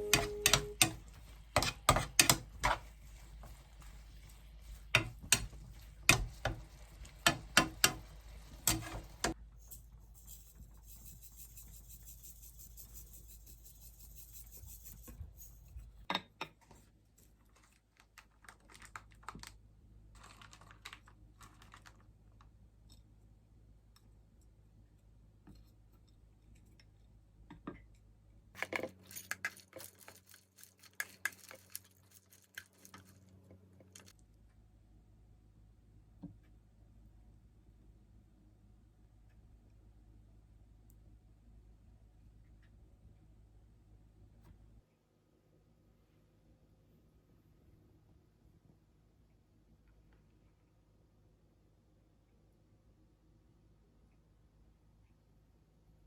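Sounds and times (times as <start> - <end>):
small hard objects clicking: 28.6 - 34.1.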